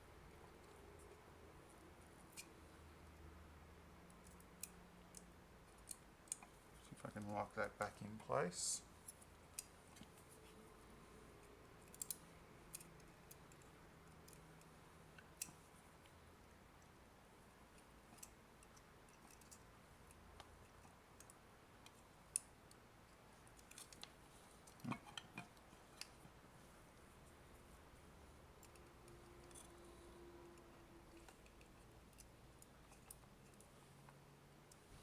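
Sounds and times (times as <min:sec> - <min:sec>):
tweezers clicking on plastic parts: 0:11.8 - 0:14.5, 0:28.4 - 0:29.8.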